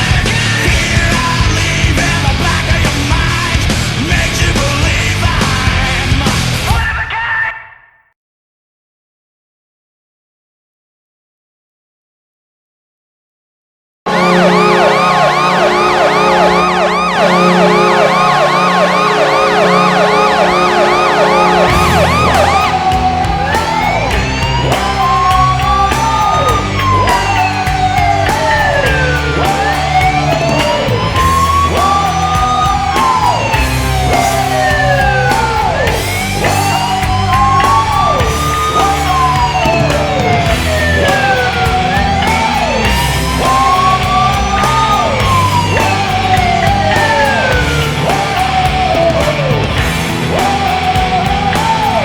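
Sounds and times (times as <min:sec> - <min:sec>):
rock song: 0:00.0 - 0:07.5, 0:14.1 - 0:52.0
arena goal horn chord: 0:14.1 - 0:28.6
siren-like rising and falling sweeps: 0:14.1 - 0:52.0.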